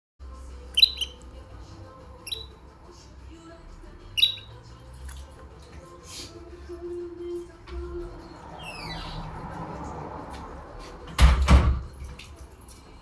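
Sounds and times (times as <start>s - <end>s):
bird high-pitched calls: 0.7s - 1.2s, 2.2s - 2.6s, 4.2s - 4.6s, 8.6s - 9.3s.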